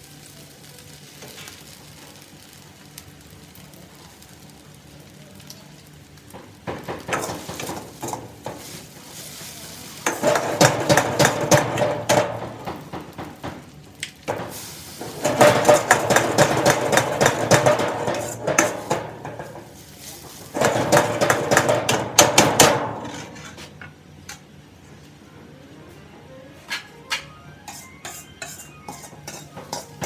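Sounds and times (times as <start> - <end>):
faint sizzle: 0.0 - 30.0
metal spatula scraping a wok: 7.1 - 12.5, 14.3 - 23.9, 27.6 - 30.0.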